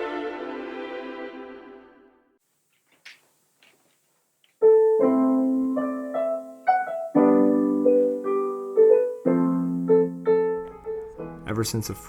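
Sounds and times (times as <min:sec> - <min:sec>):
slow piano notes and chords: 0:04.6 - 0:12.0.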